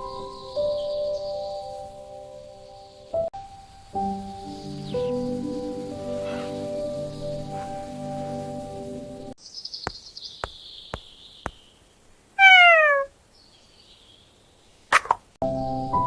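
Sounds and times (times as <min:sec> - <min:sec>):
cat meowing: 0:12.4 - 0:13.1.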